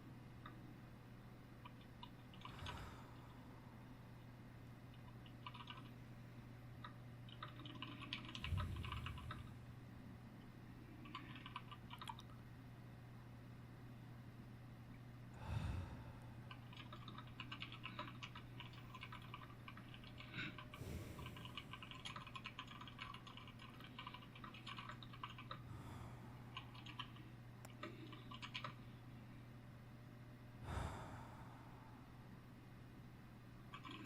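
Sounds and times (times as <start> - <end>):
slow breathing: 2.4 - 4.0, 15.3 - 16.6, 20.2 - 21.9, 25.6 - 27.2, 30.6 - 32.4
low hum: 8.1 - 22.7, 25.0 - 33.8.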